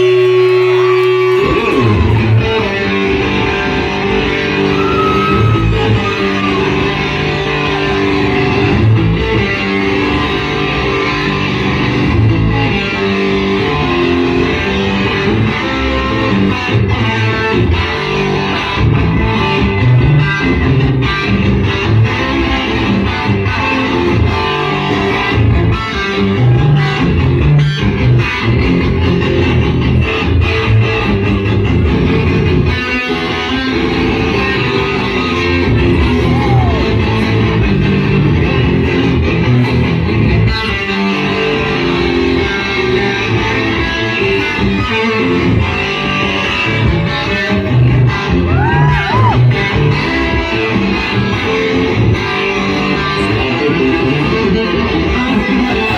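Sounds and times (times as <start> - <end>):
overdriven electric guitar riffs: 0.0 - 55.9.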